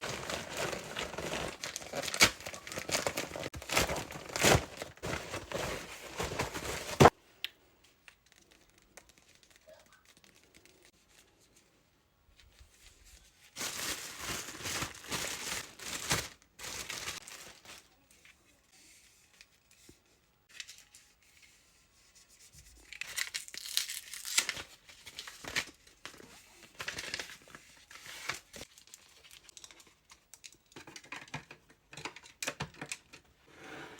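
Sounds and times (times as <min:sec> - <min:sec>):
packaging tearing and crinkling: 0:00.0 - 0:07.1, 0:13.6 - 0:17.6, 0:22.9 - 0:25.7.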